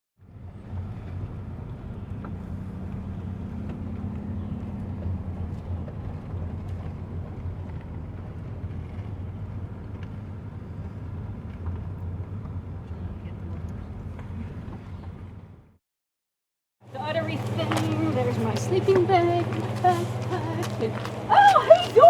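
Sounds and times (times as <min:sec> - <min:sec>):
low mechanical hum: 0:00.2 - 0:15.7, 0:16.9 - 0:22.0
noisy background: 0:16.9 - 0:22.0.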